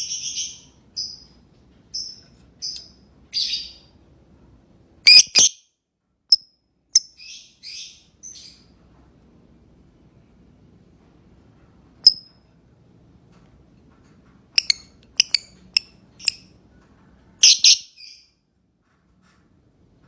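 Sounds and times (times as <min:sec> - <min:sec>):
bird chirping: 0:00.0 - 0:04.0, 0:05.1 - 0:05.6, 0:07.0 - 0:08.7, 0:14.6 - 0:16.5, 0:17.4 - 0:18.3.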